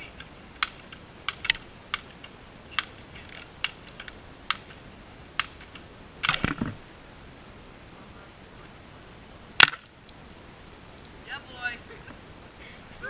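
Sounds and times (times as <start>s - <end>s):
sharp mechanical clicks: 0.0s - 4.8s, 5.4s - 6.7s.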